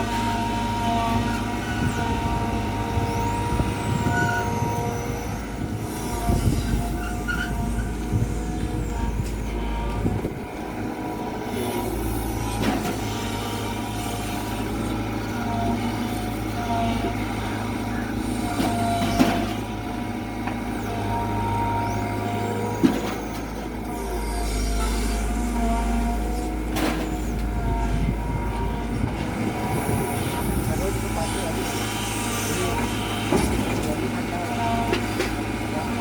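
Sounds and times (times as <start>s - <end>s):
excavator diesel engine running: 0.0s - 36.0s
wavering whine: 23.1s - 32.8s.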